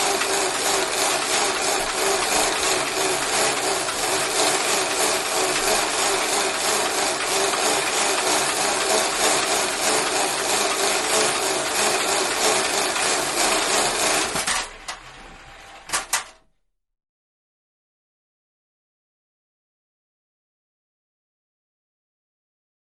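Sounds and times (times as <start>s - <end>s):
exercise bike whirring: 0.0s - 16.5s.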